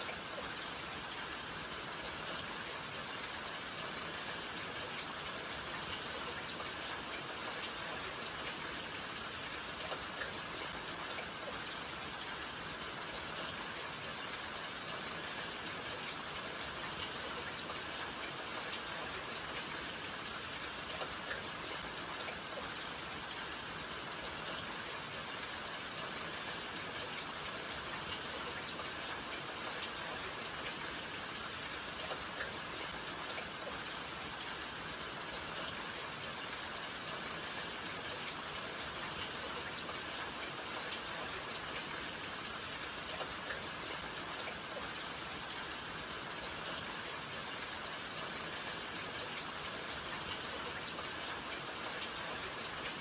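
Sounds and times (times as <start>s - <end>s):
raindrops ticking on surfaces: 0.0s - 53.0s
steady rain hiss: 0.0s - 53.0s.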